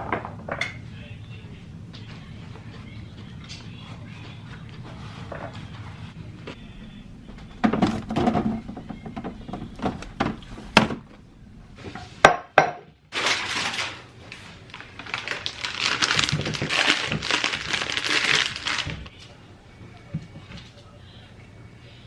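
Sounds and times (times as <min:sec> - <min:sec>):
dishes knocking and clinking: 0:07.6 - 0:11.0, 0:11.9 - 0:13.0.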